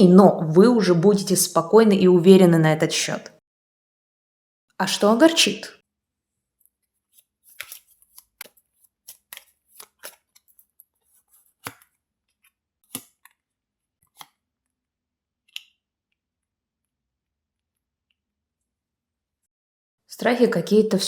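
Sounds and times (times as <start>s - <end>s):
cards snapping and tapping: 11.6s - 12.0s, 12.8s - 13.4s.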